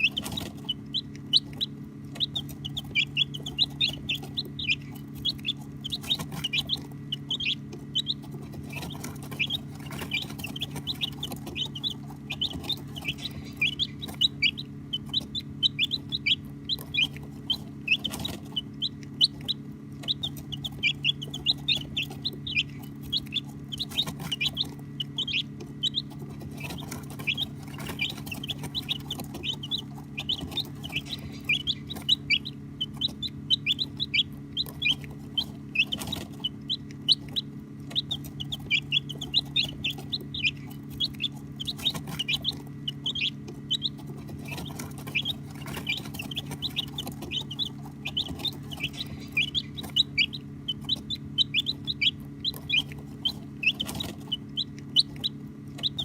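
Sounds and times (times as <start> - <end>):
baby chicks peeping: 0.0 - 56.0
steady low hum: 0.0 - 56.0.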